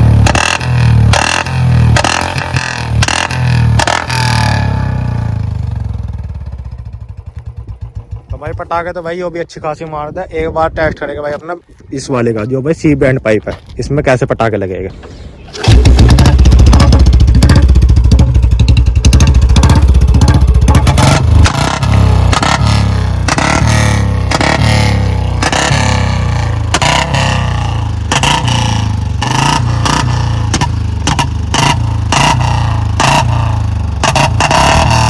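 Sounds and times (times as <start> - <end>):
exhaust backfire pops: 0.0 - 4.5, 15.0 - 24.7
motorcycle engine revving: 0.0 - 8.8, 15.4 - 35.0.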